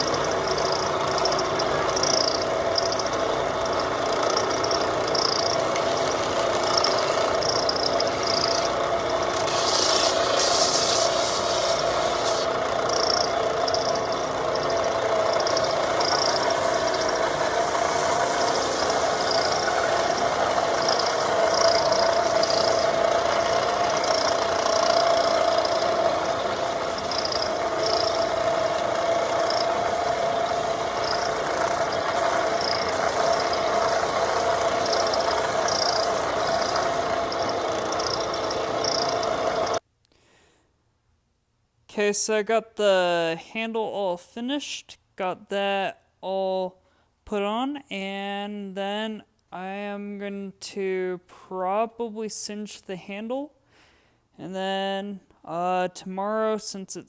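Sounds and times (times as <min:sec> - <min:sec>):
power tool running: 0:00.0 - 0:39.8.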